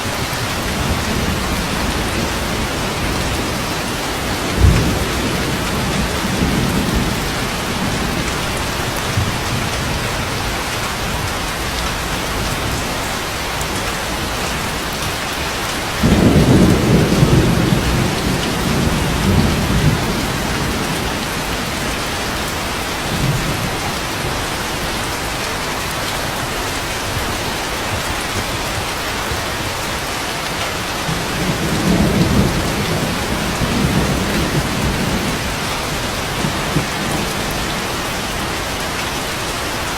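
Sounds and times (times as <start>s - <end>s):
steady rain: 0.0s - 39.9s
thunder rumble: 16.0s - 23.9s, 31.0s - 38.6s.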